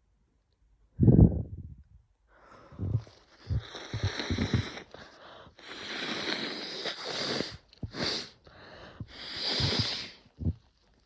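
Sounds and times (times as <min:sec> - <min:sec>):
wet nasal sniffs: 0:02.8 - 0:10.6
airy hiss: 0:09.1 - 0:10.2.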